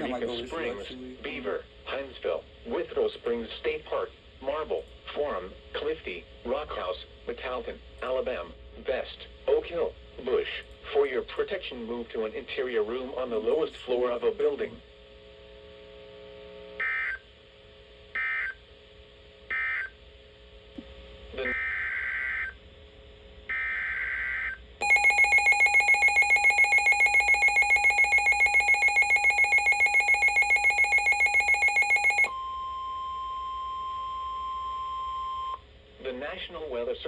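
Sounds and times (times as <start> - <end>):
rapidly pulsing electronic alarm: 16.8 - 17.3, 18.1 - 18.6, 19.4 - 20.0, 21.4 - 22.6, 23.5 - 35.6
steady warning alarm tone: 18.1 - 18.6, 19.5 - 20.0, 21.4 - 22.6, 23.5 - 35.6.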